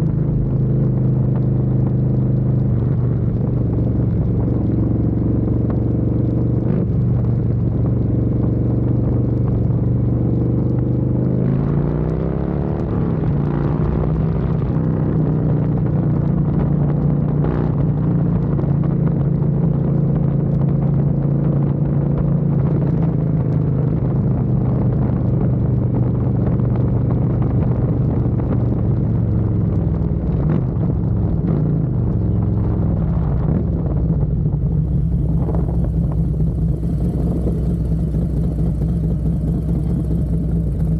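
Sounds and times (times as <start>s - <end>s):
motorcycle engine revving: 26.7s - 40.9s.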